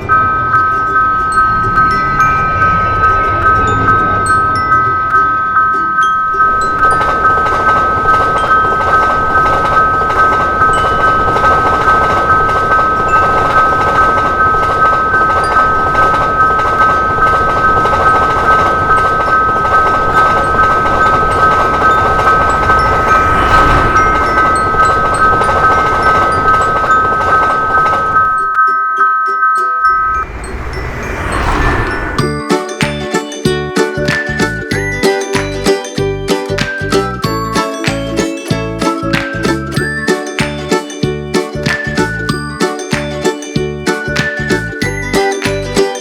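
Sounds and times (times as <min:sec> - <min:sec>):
train passing: 0:00.0 - 0:28.5, 0:29.9 - 0:46.0
level-crossing warning bell ringing: 0:00.0 - 0:46.0.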